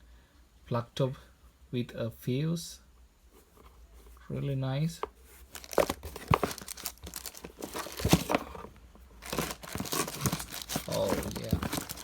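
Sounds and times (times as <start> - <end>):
packaging crinkling and tearing: 5.5 - 8.5, 9.2 - 12.0.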